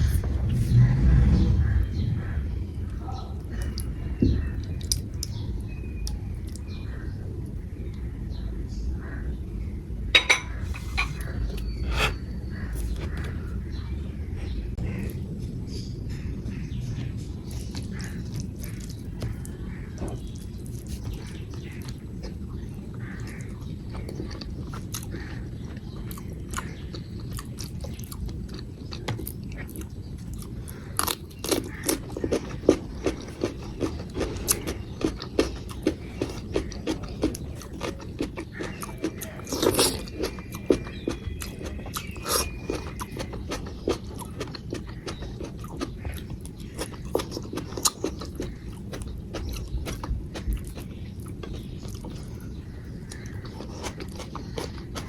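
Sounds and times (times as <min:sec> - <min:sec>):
steady low hum: 0:00.0 - 0:55.0
wet chewing and lip-smacking: 0:04.6 - 0:05.4, 0:17.4 - 0:19.6, 0:20.2 - 0:55.0.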